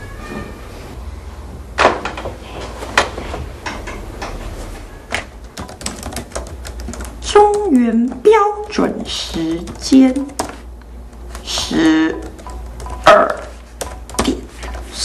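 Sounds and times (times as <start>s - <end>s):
knocks and clicks: 5.1s - 15.0s.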